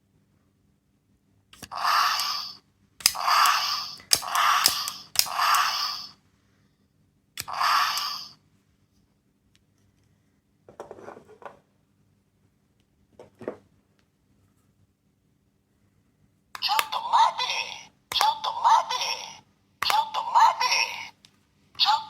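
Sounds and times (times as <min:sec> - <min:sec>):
toy button click: 0:01.6 - 0:06.1, 0:07.4 - 0:08.4
toy noisy sound effect: 0:01.6 - 0:06.2, 0:07.4 - 0:08.4, 0:16.6 - 0:21.2, 0:21.8 - 0:22.0
toy rattling when handled: 0:01.7 - 0:06.1.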